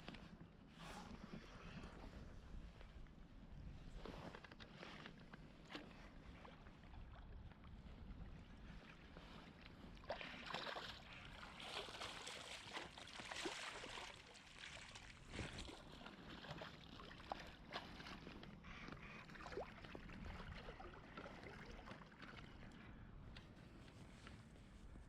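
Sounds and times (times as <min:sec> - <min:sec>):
creek water splashing: 0:10.0 - 0:22.8.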